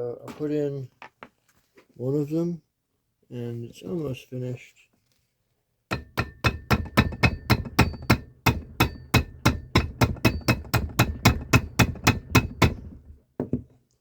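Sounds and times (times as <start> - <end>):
hammer striking metal rivet: 5.9 - 13.5.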